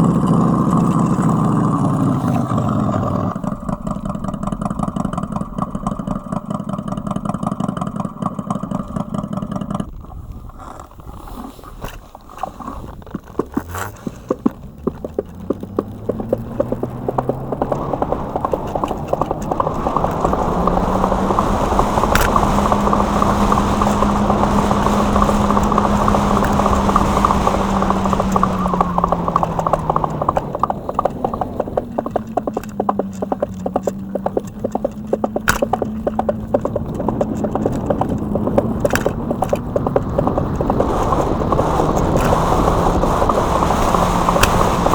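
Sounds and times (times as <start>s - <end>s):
rapid clatter of clicks: 13.0s - 44.9s
synthetic engine sound: 14.7s - 44.9s.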